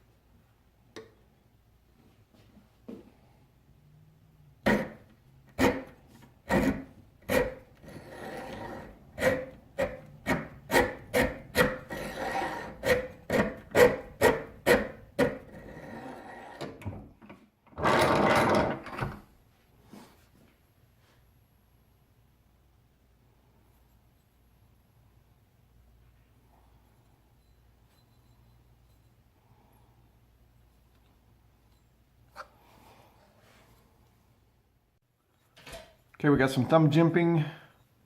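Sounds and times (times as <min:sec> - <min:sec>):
file scraping steel: 0:04.6 - 0:16.8.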